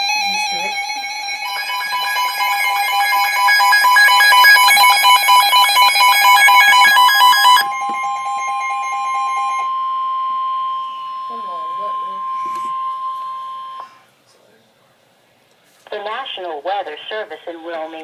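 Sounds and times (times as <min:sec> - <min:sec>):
electronic two-tone alarm: 0:00.0 - 0:14.0.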